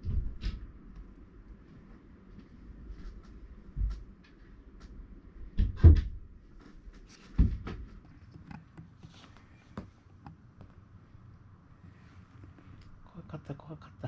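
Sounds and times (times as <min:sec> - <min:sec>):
faint low hum: 0:00.0 - 0:14.0
dull knocks and thumps: 0:07.2 - 0:08.9.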